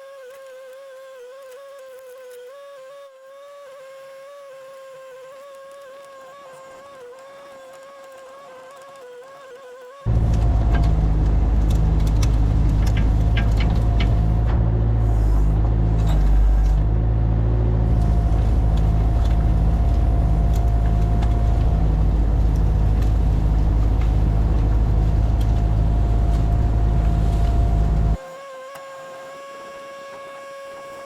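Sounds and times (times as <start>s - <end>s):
scattered clicks and knocks: 10.1s - 14.8s
engine rumbling under load: 10.1s - 28.2s
faint steady whine: 10.1s - 28.2s.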